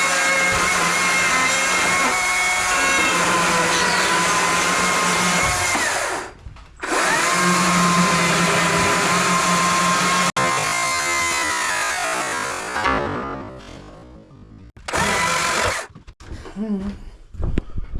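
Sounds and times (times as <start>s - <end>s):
electric power tool motor whine: 0.0s - 12.8s, 14.8s - 16.0s.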